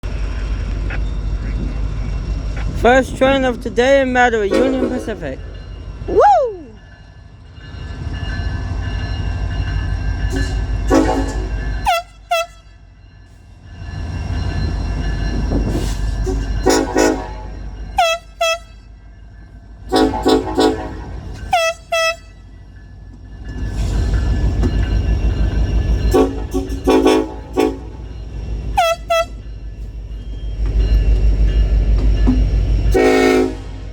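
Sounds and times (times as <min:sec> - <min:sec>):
freight train rumble: 0:00.0 - 0:33.9
locomotive air horn blasts: 0:10.9 - 0:12.6, 0:16.3 - 0:18.8, 0:19.9 - 0:22.3, 0:26.1 - 0:28.0, 0:28.8 - 0:29.4, 0:32.9 - 0:33.8.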